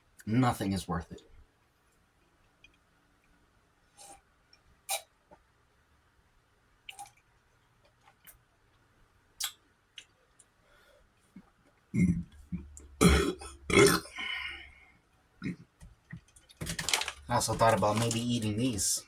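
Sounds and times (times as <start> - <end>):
man burping loudly: 12.0 - 14.7, 15.4 - 15.6.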